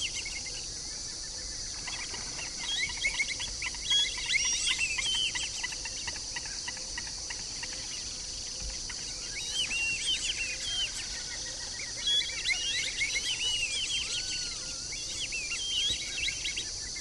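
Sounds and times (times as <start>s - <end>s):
insect chorus: 0.0s - 17.0s
ducks whistling calls: 1.8s - 17.0s.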